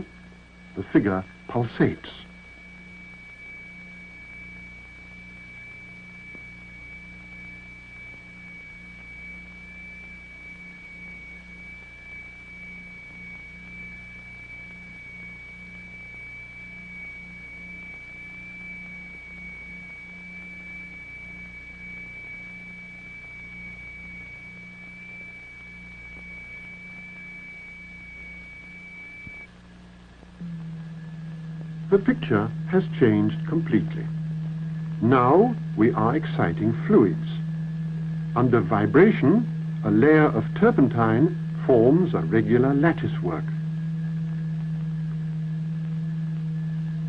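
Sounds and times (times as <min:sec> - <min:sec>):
low beating test tone: 0:00.0 - 0:47.0
low throbbing hum: 0:00.0 - 0:47.0
steady high test tone: 0:00.0 - 0:47.0
high-pitched test tone: 0:30.3 - 0:47.0.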